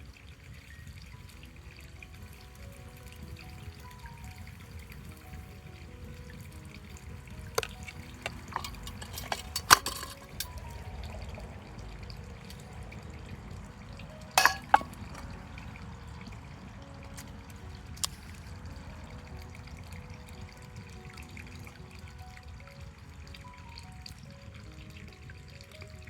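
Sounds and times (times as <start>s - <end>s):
faint background music: 0.0s - 26.0s
steady low hiss: 0.0s - 26.0s
sharp clinks and knocks: 7.6s - 10.7s, 14.4s - 15.3s.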